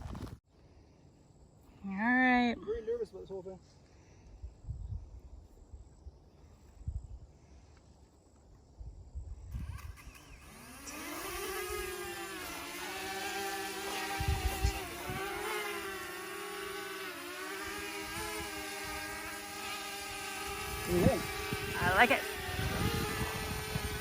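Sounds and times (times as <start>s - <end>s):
wind buffeting microphone: 4.4s - 5.9s, 8.8s - 16.0s, 17.6s - 24.0s
drone propellers buzzing: 9.5s - 24.0s.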